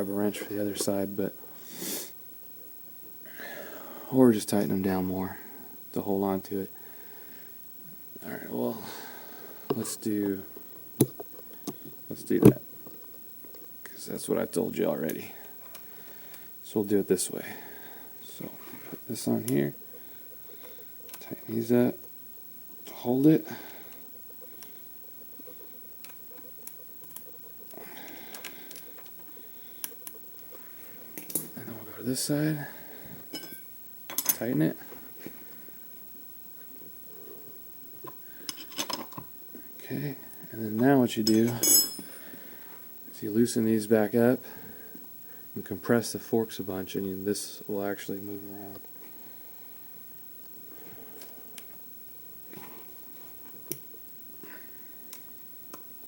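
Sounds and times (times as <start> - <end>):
hand tools clicking and clinking: 33.3 - 34.4, 41.2 - 42.1.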